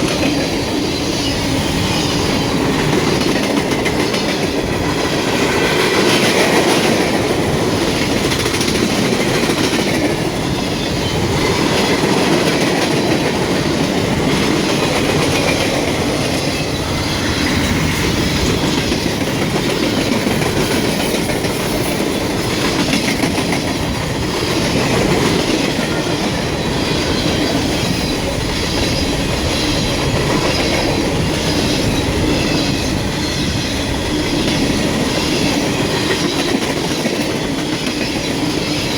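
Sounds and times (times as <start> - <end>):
train wheels clattering over rails: 0.0 - 38.9.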